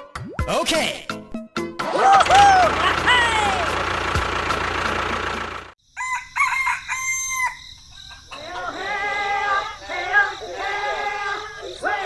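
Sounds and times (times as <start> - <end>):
rooster crowing: 2.0 - 3.4, 5.9 - 12.0.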